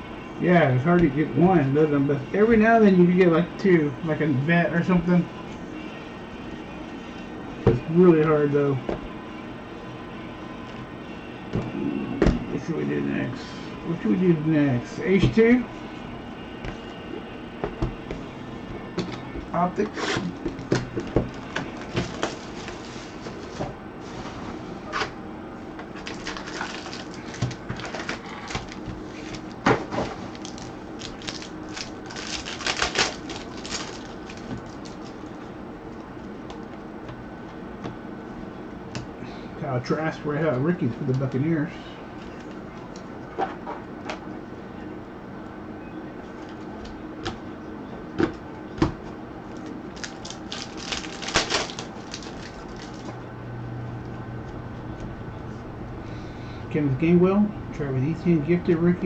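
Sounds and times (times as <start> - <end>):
card pack wrapper crinkling: 26.0 - 29.6, 30.3 - 35.3, 49.9 - 53.1.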